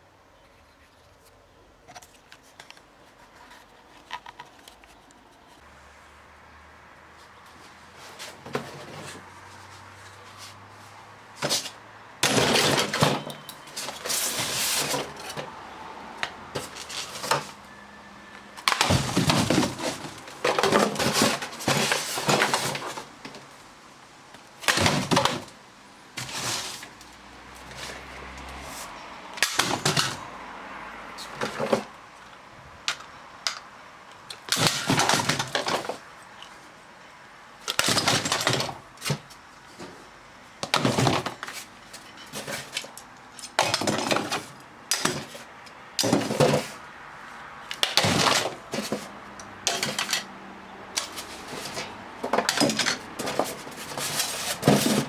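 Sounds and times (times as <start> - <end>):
hard plastic parts rattling: 1.9 - 5.5, 11.4 - 15.6, 16.2 - 17.6, 18.6 - 23.5, 24.6 - 25.6, 29.4 - 30.2, 31.2 - 36.6, 37.6 - 46.9, 47.6 - 50.3, 50.9 - 55.0.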